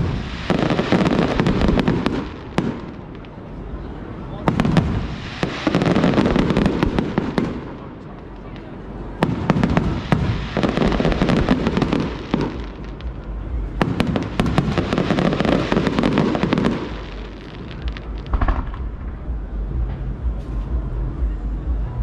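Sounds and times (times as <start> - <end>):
fireworks bangs: 0.0 - 20.9
fireworks crackling: 0.0 - 20.9
low rumble: 17.0 - 22.0.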